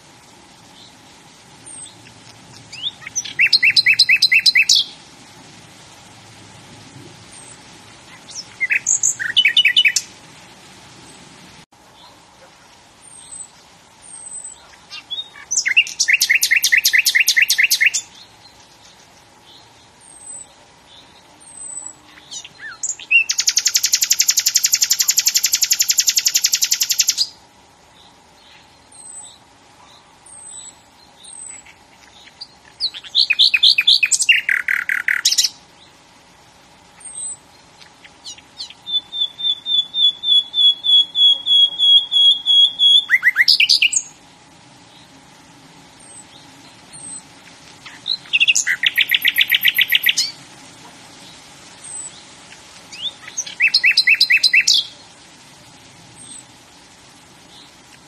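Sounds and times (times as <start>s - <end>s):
songbird trilling: 1.6s - 5.0s, 8.1s - 10.1s, 13.0s - 18.2s, 20.0s - 27.4s, 30.3s - 35.6s, 37.0s - 44.2s, 46.0s - 50.4s, 52.9s - 55.0s
high single bird chirps: 2.7s - 4.9s, 38.2s - 44.1s, 47.8s - 50.3s.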